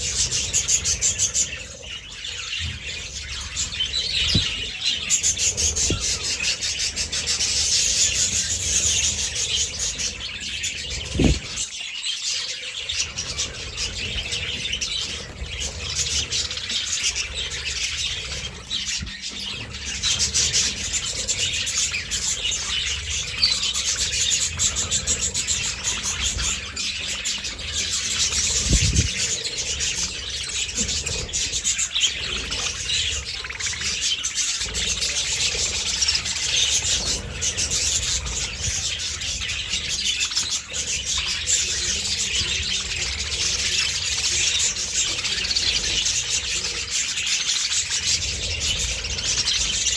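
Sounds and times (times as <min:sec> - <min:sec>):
budgerigars chattering and chirping: 0:00.0 - 0:49.9
low thumps: 0:11.1 - 0:11.6.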